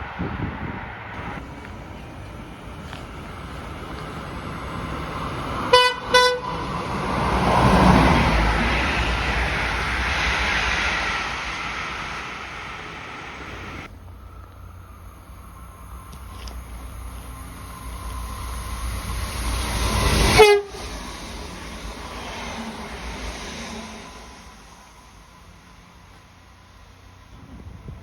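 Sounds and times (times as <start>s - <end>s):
train passing: 0.0s - 28.0s
train horn toots: 5.7s - 6.8s, 20.2s - 21.0s.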